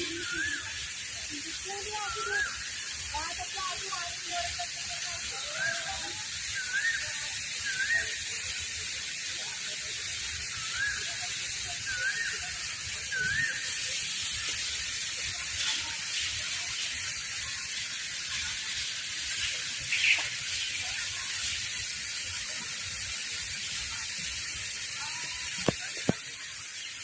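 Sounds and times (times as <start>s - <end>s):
bird chirps: 19.9s - 20.8s.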